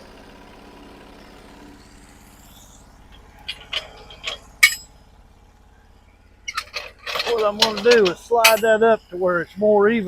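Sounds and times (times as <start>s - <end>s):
sawmill engine idling: 0.0s - 10.0s
sharp knocks and clinks: 3.1s - 5.0s, 6.4s - 9.1s.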